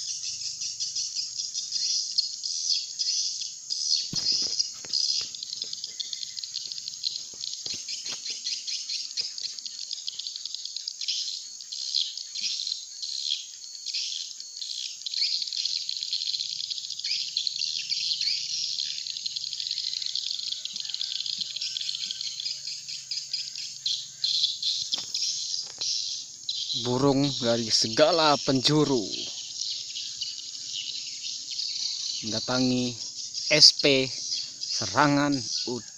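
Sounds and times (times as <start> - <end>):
swiftlets twittering: 13.7 - 35.9.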